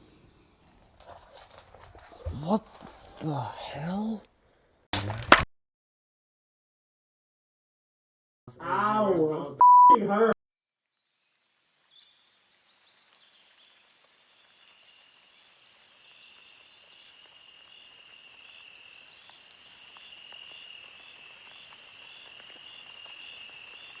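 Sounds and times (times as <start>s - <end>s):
crickets chirping: 15.3s - 24.0s.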